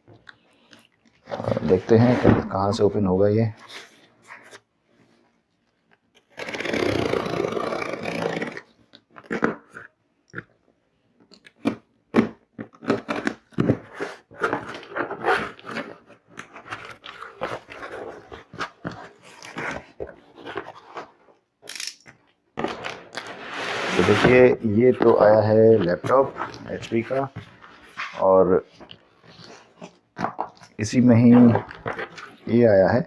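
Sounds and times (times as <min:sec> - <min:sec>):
cardboard ripping: 0:22.6 - 0:28.2
packaging crackling and rustling: 0:22.6 - 0:32.6.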